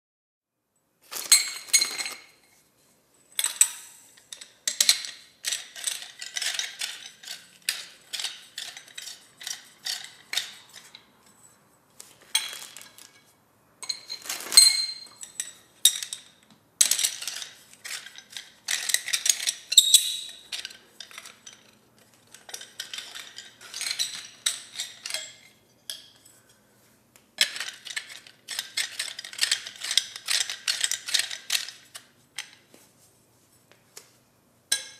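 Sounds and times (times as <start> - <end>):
metal parts clinking together: 1.1 - 2.3, 3.3 - 11.0, 13.8 - 26.5, 27.4 - 32.6.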